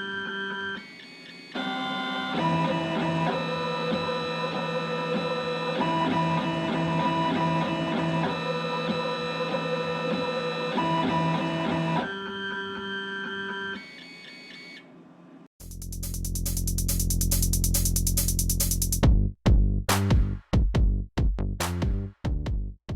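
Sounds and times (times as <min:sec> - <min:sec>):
electronic music with drum beat: 0:15.6 - 0:22.6.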